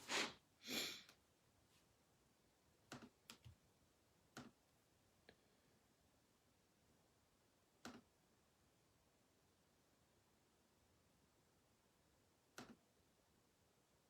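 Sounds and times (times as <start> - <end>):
short hiss: 0.0 - 1.0.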